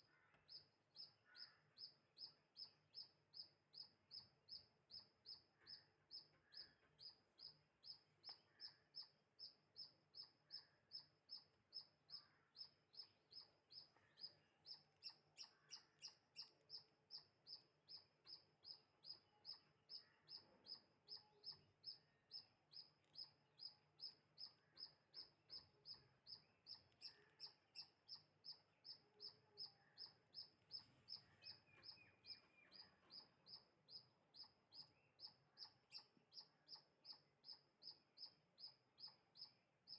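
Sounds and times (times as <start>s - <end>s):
fainter chirps from other birds: 0.0s - 39.9s
small bird chirping: 0.0s - 39.9s.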